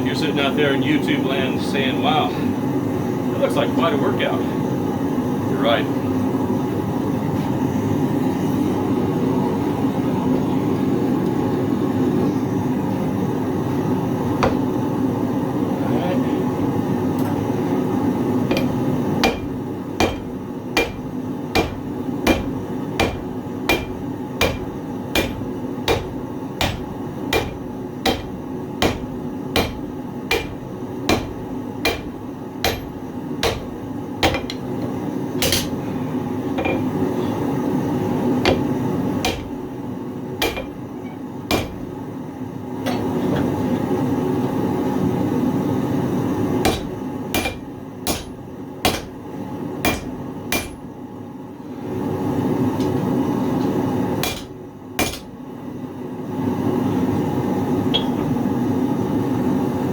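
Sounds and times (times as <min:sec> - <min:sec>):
hammer striking steel on anvil: 0:14.4 - 0:14.7, 0:18.5 - 0:34.6, 0:35.4 - 0:35.8, 0:38.5 - 0:39.6, 0:40.4 - 0:40.8, 0:41.5 - 0:41.8, 0:46.6 - 0:49.2, 0:49.8 - 0:50.8, 0:54.2 - 0:55.3.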